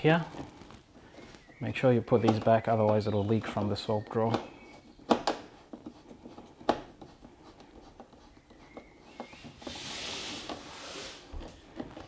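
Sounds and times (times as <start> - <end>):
scratchy rasp: 5.4 - 12.0.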